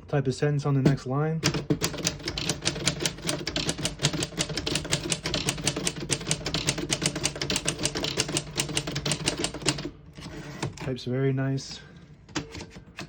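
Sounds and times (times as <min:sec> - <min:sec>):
manual typewriter keystrokes: 0:01.4 - 0:10.7.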